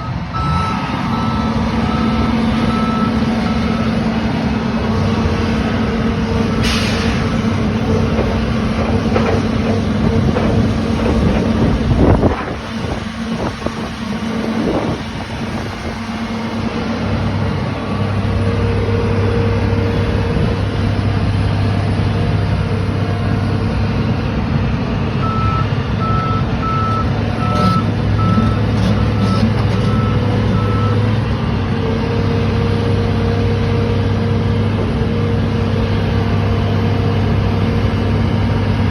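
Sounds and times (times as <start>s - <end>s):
reversing alarm beeps: 0.0s - 3.9s, 25.2s - 31.0s
construction machine engine running: 0.0s - 38.9s.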